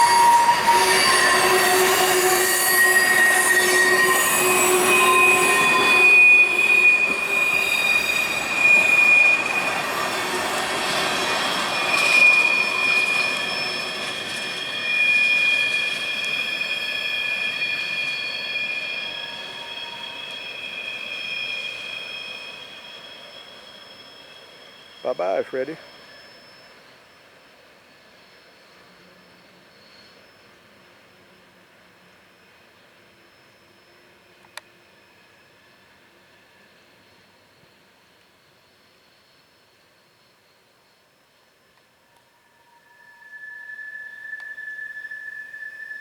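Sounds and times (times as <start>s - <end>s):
train wheels squealing on rails: 0.0s - 46.0s.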